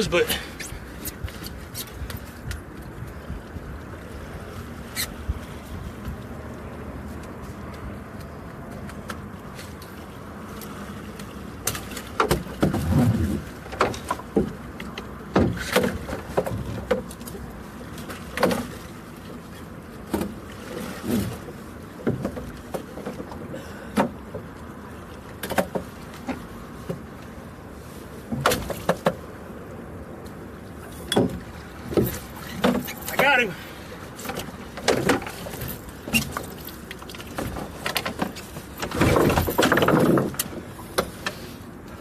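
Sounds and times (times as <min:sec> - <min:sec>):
knocks and clunks in a boat: 0:00.0 - 0:42.0
rushing water: 0:00.0 - 0:42.0
wind: 0:00.0 - 0:42.0.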